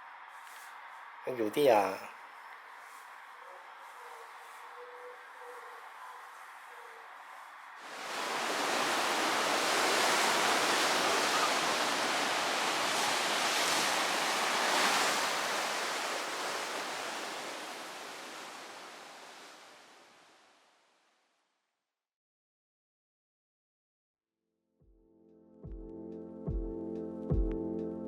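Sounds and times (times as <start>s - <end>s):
sea waves washing on shore: 7.8s - 20.6s.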